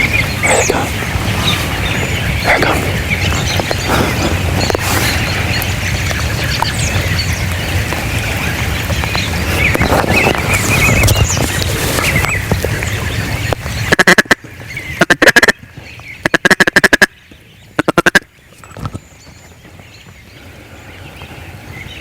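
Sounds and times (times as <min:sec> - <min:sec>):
rustle and breeze: 0:00.0 - 0:22.0
duck call chattering: 0:13.9 - 0:14.4, 0:15.0 - 0:15.6, 0:16.2 - 0:17.1, 0:17.8 - 0:18.2.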